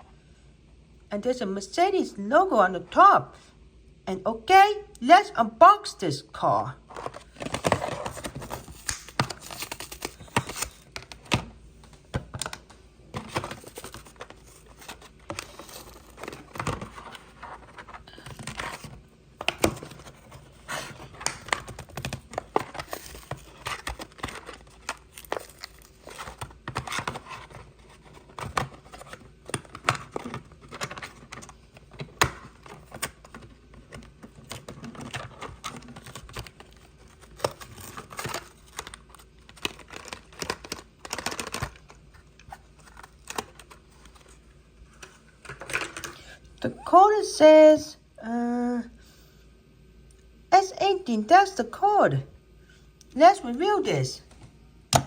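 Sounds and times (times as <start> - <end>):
packaging being opened by hand: 6.9 - 46.2.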